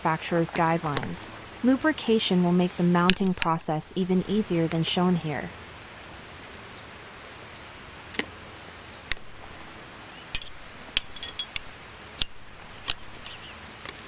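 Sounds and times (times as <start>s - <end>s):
tools clicking against wheel rim: 10.3s - 13.5s.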